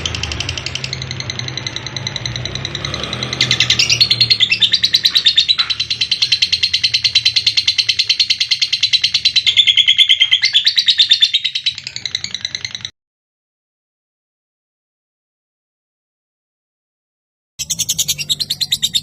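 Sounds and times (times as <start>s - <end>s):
lovebird shrill chatter: 0.0s - 12.9s.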